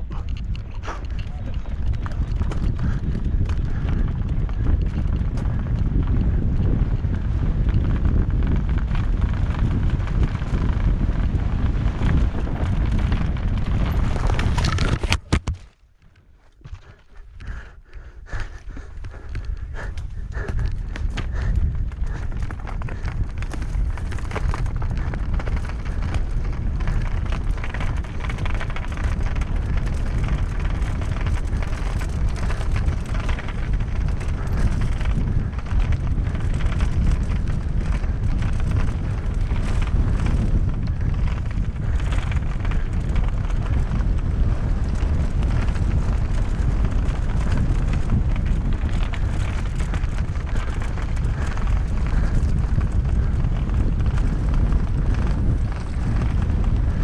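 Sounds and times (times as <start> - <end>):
bike clattering and rattling: 0.0 - 57.0
wind buffeting microphone: 0.0 - 57.0.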